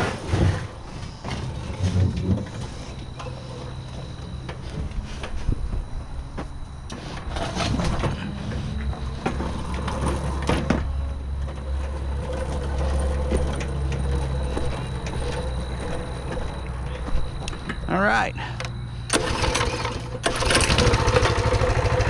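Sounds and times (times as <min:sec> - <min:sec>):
engine knocks and clatter: 0:07.2 - 0:17.9, 0:18.6 - 0:22.0
small engine starting and idling: 0:19.0 - 0:22.0.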